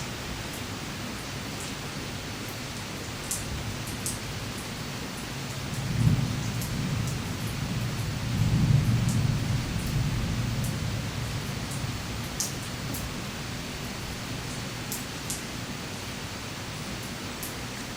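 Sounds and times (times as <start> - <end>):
steady rain: 0.0 - 17.9
low roll of thunder: 5.8 - 12.2.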